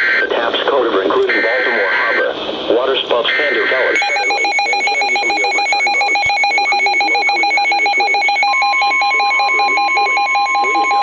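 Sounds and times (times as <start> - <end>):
steady alarm tone: 0.0 - 0.3, 1.3 - 2.3, 3.3 - 11.0
rapidly pulsing electronic beep: 1.3 - 2.3, 3.3 - 11.0.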